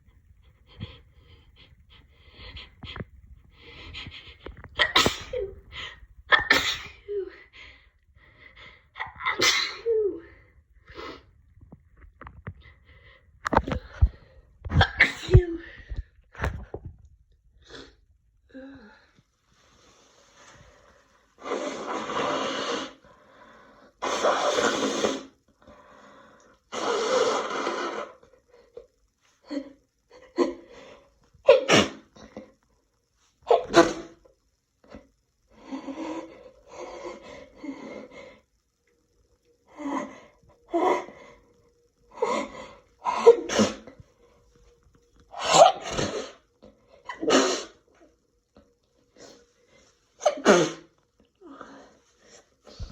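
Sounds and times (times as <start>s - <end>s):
person sneezing: 4.8s - 5.6s, 6.3s - 7.0s, 9.1s - 10.0s, 33.5s - 34.2s, 43.1s - 43.9s, 45.4s - 46.4s, 47.1s - 47.8s, 50.2s - 50.9s.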